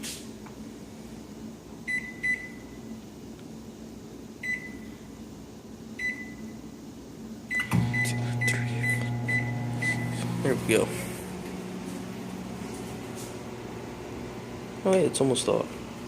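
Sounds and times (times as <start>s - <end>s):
microwave keypad beeps: 1.9s - 2.6s, 4.4s - 4.9s, 6.0s - 6.4s, 8.8s - 10.1s
microwave oven humming: 4.1s - 16.0s.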